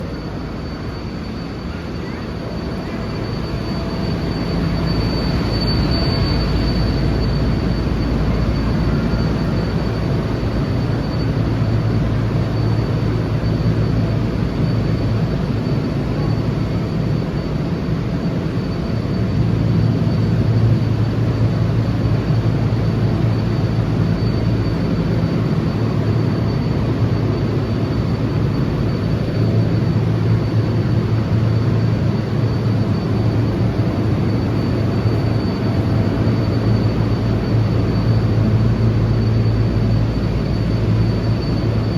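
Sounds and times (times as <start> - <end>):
low hum: 0.0 - 16.2
refrigeration fans droning: 0.0 - 41.9
thin high whine: 0.0 - 41.9.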